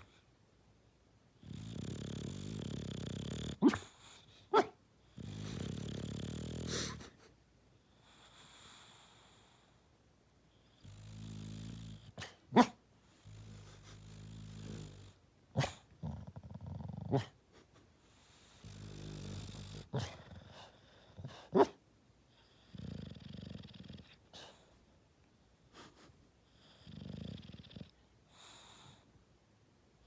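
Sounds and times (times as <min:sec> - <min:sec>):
dog snoring: 0:01.4 - 0:04.2, 0:05.1 - 0:07.1, 0:10.7 - 0:12.4, 0:13.1 - 0:17.3, 0:18.3 - 0:21.7, 0:22.4 - 0:24.6, 0:26.5 - 0:29.0.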